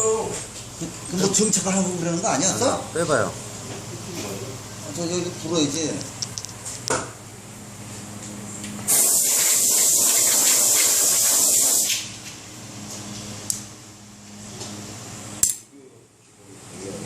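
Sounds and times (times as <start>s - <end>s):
low machine hum: 0.0s - 8.9s, 12.0s - 17.0s
compressed air blow gun hiss: 8.9s - 12.0s.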